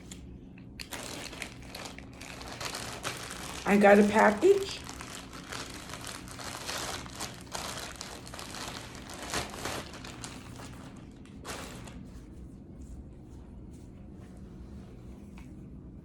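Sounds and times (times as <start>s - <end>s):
packaging rustling and crackling: 0.8s - 12.1s.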